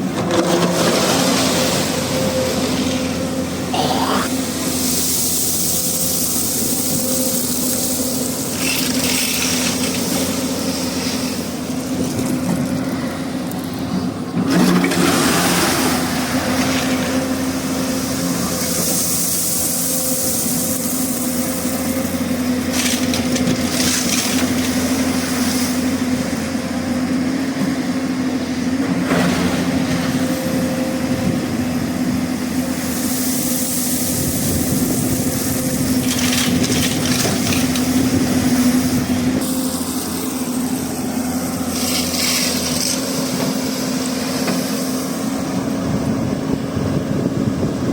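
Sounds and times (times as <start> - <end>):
excavator diesel engine running: 0.0 - 47.9
stone clattering and scraping: 8.5 - 10.1, 36.0 - 37.9.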